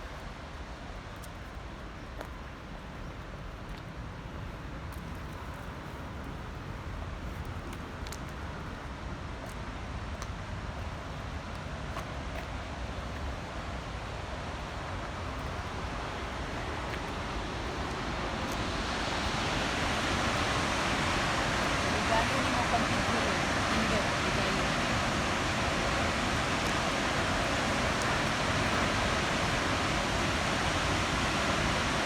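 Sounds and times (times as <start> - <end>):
water pouring from a dam: 7.4 - 32.0.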